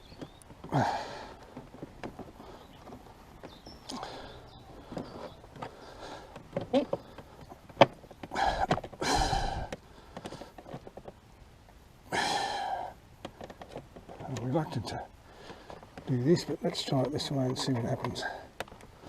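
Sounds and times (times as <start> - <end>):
person sighing: 8.4 - 9.7, 12.1 - 12.9.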